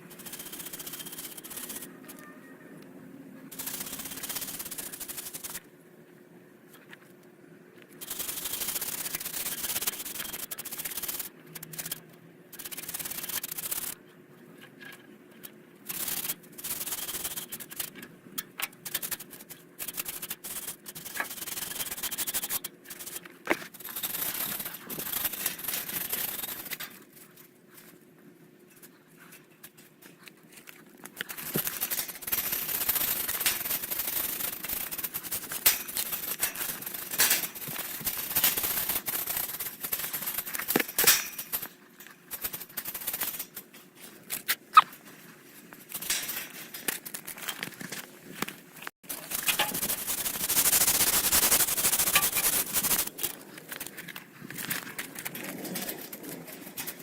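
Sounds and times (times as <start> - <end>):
scraping condenser coil fins: 0.0 - 2.4, 14.7 - 27.9, 31.2 - 41.8, 42.4 - 57.0.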